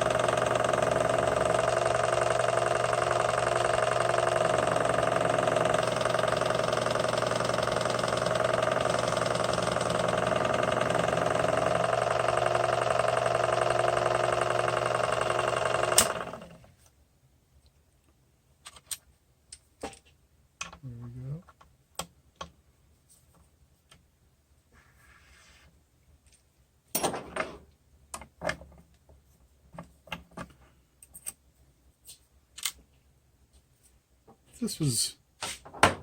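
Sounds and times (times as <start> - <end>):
lathe motor whine: 0.0 - 16.7.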